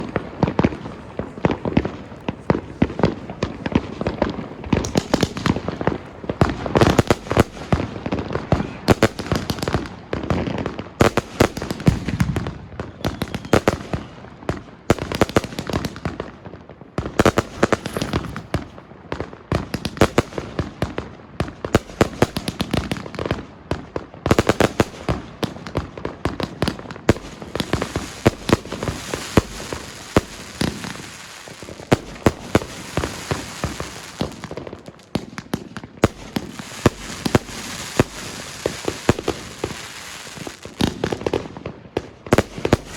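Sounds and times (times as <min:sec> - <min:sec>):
firework battery launches and bursts: 0:17.3 - 0:18.7.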